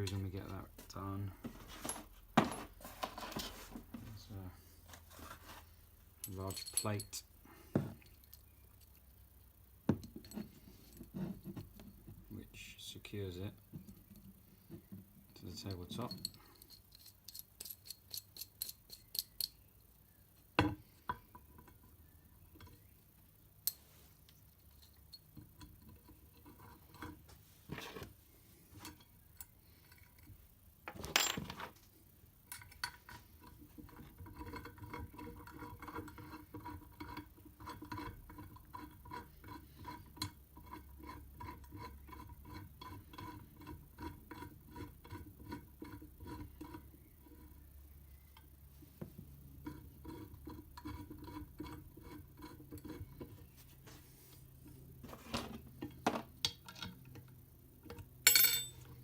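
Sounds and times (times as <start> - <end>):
hand tools clicking on metal: 16.0 - 19.6.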